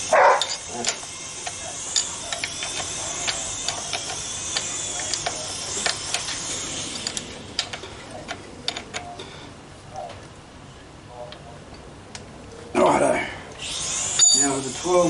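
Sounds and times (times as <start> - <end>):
ratchet wrench clicking: 0.4 - 9.1, 13.6 - 15.0.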